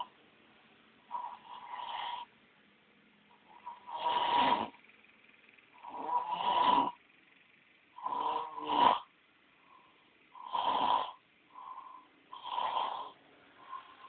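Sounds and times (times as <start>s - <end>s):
person snoring: 1.1s - 2.3s, 3.5s - 4.8s, 5.8s - 7.0s, 8.0s - 9.1s, 10.4s - 14.0s.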